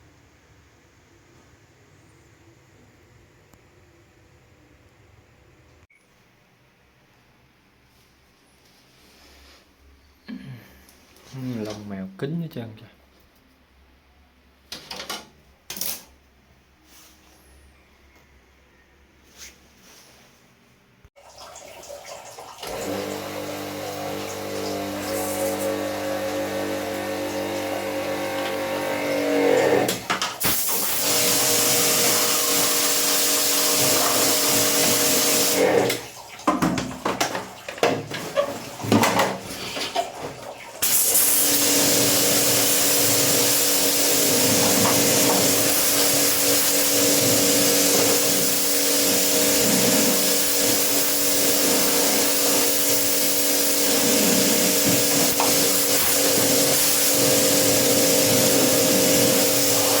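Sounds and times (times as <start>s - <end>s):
pressure washer spraying water: 22.6s - 36.0s, 40.8s - 60.0s.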